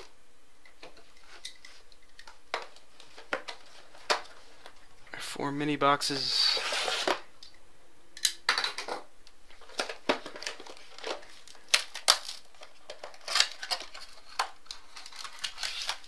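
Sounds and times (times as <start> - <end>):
packaging crinkling: 9.5 - 16.0.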